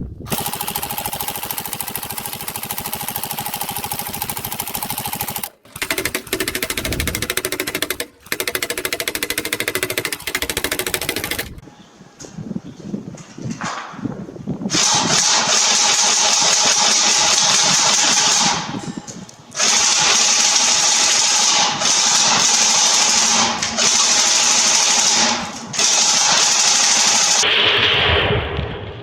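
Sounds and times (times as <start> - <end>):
airsoft gun firing bursts: 0.3 - 11.6, 19.6 - 27.4.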